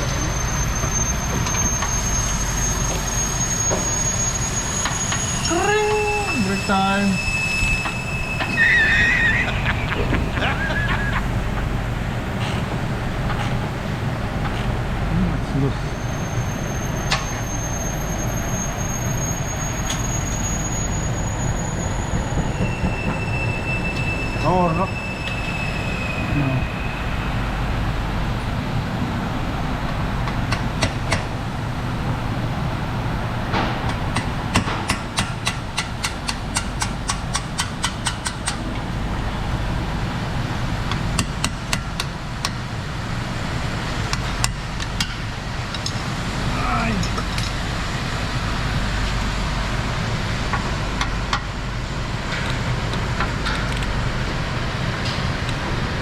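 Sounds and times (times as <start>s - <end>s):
high-pitched whine: 0.0s - 12.4s, 15.2s - 30.2s.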